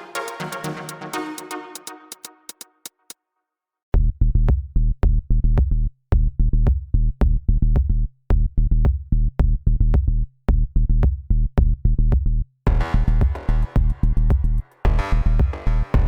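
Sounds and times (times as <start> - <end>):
electronic music with drum beat: 0.0 - 3.2, 12.7 - 16.0.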